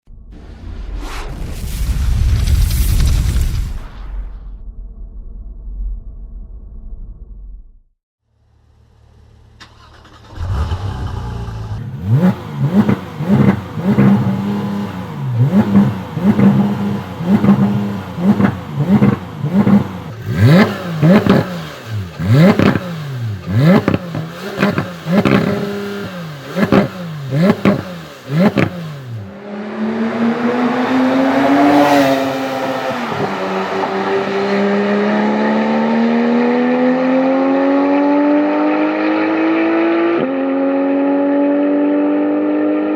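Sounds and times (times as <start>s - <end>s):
sports car engine revving: 9.8s - 42.9s.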